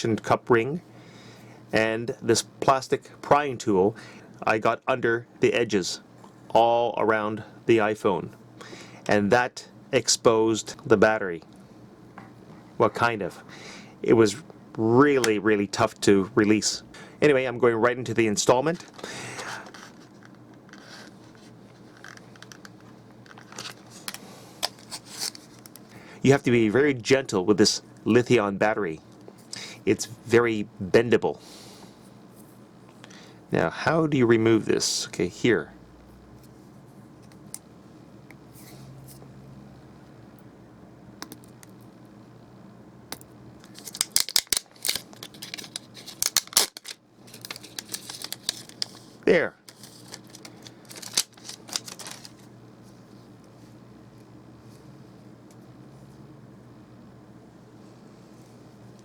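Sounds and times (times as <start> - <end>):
battery adhesive crackling and clicking: 43.2 - 46.9
soft crinkling: 43.6 - 54.9.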